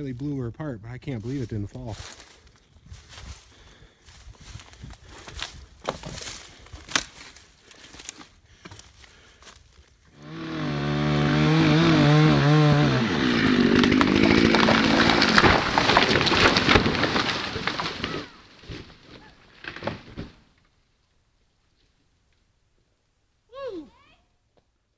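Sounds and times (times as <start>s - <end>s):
chainsaw idling and cutting wood: 4.8s - 20.0s.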